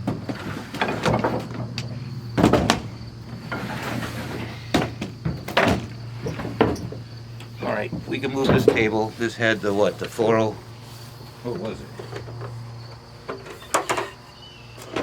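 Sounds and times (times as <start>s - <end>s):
knocks and clunks of objects: 0.0s - 9.1s, 11.5s - 14.2s.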